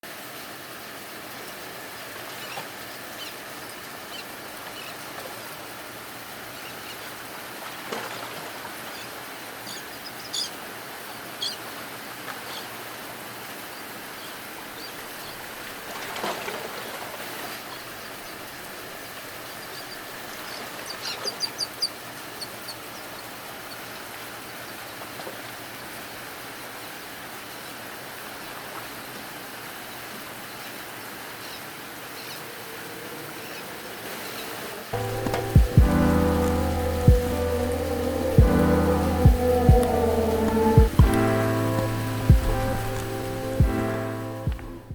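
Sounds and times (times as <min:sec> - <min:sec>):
steady rain falling: 0:00.0 - 0:44.9
bird calls: 0:08.8 - 0:11.7, 0:19.4 - 0:23.8, 0:33.2 - 0:44.8.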